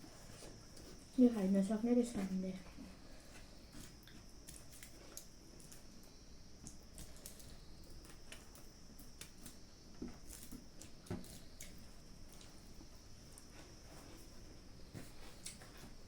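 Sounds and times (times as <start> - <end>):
soft chewing and lip smacks: 10.4 - 14.4.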